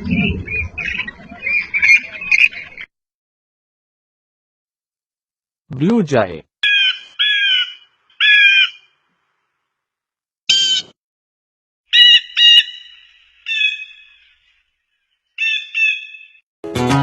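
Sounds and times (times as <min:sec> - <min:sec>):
blue jay calling: 0:06.6 - 0:09.0, 0:10.5 - 0:10.9, 0:11.9 - 0:14.5, 0:15.3 - 0:16.4.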